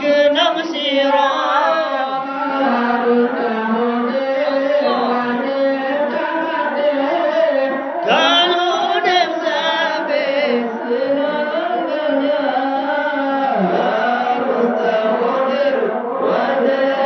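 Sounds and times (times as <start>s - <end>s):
voice with trembling pitch: 0.0s - 6.6s
steady held tones: 0.0s - 11.6s
chant-like singing: 0.0s - 17.0s.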